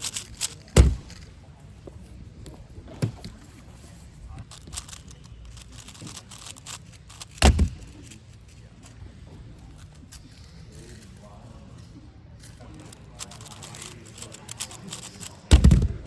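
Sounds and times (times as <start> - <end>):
plastic puzzle clicking: 0.0 - 1.2, 4.4 - 9.0, 12.8 - 16.0.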